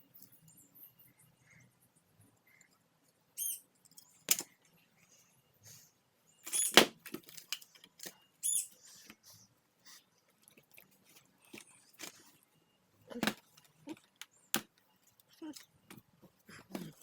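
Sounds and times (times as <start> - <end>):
short high squeaks: 3.4 - 3.7, 6.5 - 6.8, 8.4 - 9.0
plastic parts clicking: 3.9 - 4.5.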